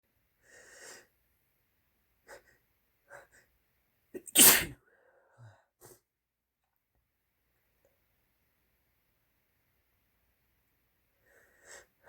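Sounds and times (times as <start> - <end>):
person sneezing: 4.2 - 4.8.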